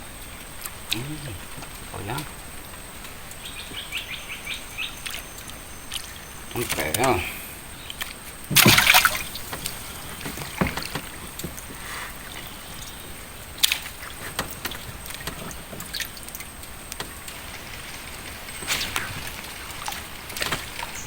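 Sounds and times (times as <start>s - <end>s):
faint water sounds: 0.0s - 21.0s
light knocks and clicks: 8.5s - 11.8s.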